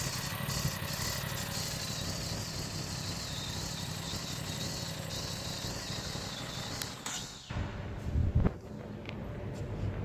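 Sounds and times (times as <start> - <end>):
motorcycle engine idling: 0.0 - 7.5.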